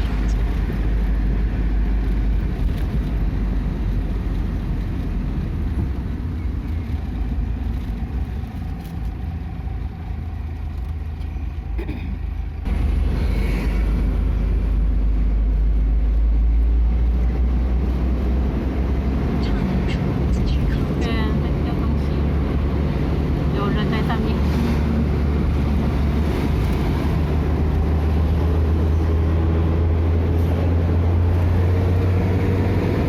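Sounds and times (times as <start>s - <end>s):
vehicle engine and road noise: 0.0s - 33.0s.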